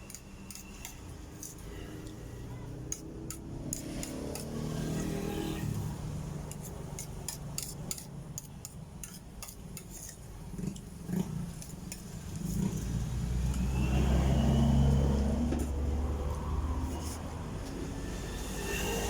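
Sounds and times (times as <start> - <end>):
vehicle passing close by: 3.3 - 6.5, 12.4 - 19.0.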